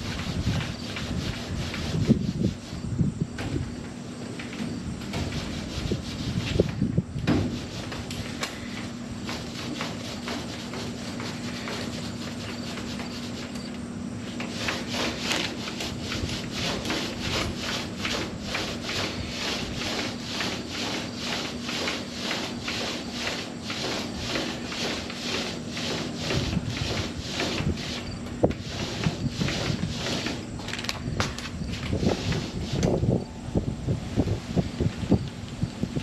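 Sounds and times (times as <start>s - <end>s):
hand rubbing car body: 5.1s - 13.6s, 14.2s - 30.5s, 31.7s - 33.0s.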